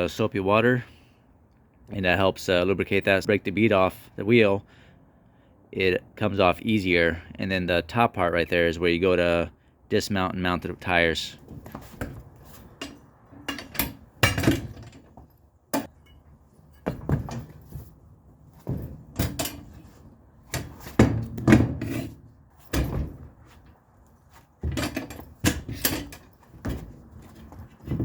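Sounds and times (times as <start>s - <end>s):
tire changer metallic clunks: 11.7s - 23.7s, 24.6s - 28.0s.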